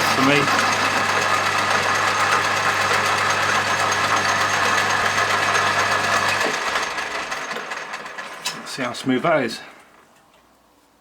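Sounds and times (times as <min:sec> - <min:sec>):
metal lathe motor hum: 0:00.0 - 0:08.5.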